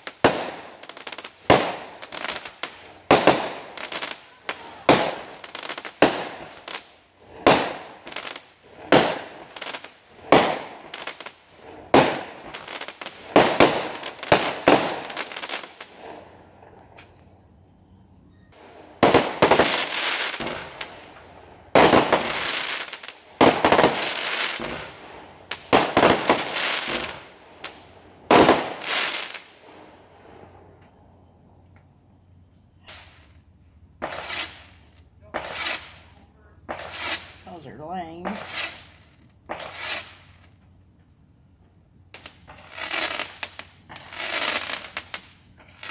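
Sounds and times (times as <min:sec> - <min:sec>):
echoing firework blasts: 0:00.0 - 0:17.2, 0:18.2 - 0:31.2, 0:32.4 - 0:40.7, 0:42.1 - 0:45.9
fireworks bangs: 0:00.0 - 0:17.2, 0:18.5 - 0:30.9, 0:32.8 - 0:40.6, 0:42.1 - 0:45.9.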